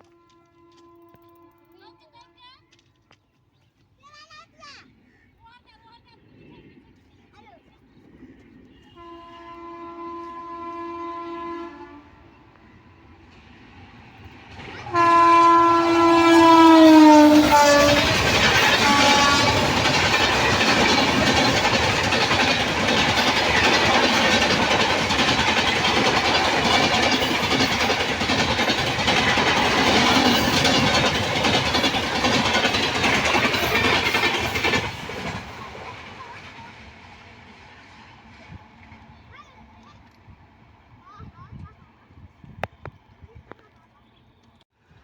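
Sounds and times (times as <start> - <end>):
train horn: 0.0 - 2.4, 8.7 - 12.6, 14.8 - 20.6
train wheels clattering on rails: 13.3 - 40.1.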